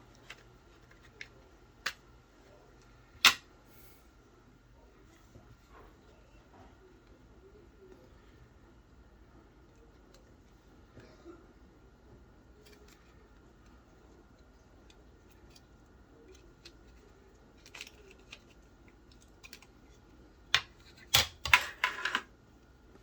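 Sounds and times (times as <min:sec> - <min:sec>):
plastic parts clicking: 0:14.8 - 0:22.3.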